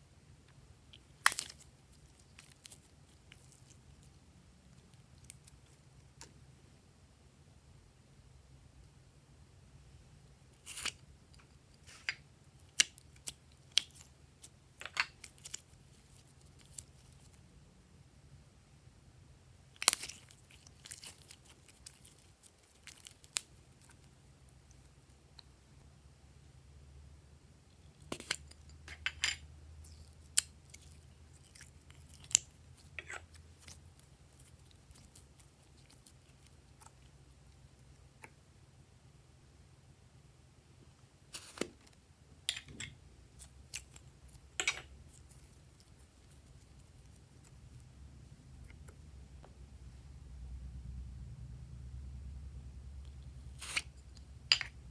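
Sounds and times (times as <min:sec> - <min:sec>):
crisp clicks and snips: 0:19.8 - 0:25.0, 0:53.4 - 0:54.8.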